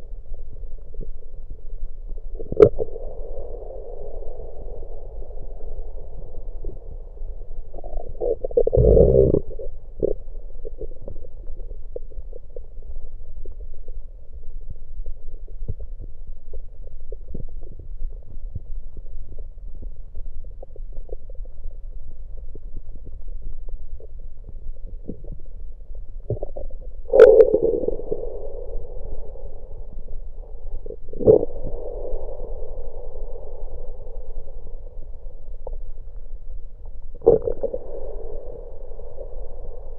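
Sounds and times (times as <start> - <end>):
stomach gurgling: 0.2 - 3.6, 7.6 - 32.3, 36.8 - 39.8.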